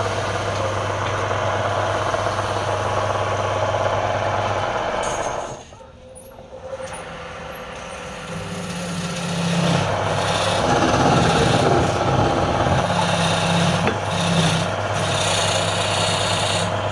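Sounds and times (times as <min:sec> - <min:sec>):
wood lathe motor hum: 0:00.0 - 0:04.8, 0:07.4 - 0:16.9
tool scraping spinning wood: 0:07.9 - 0:16.9.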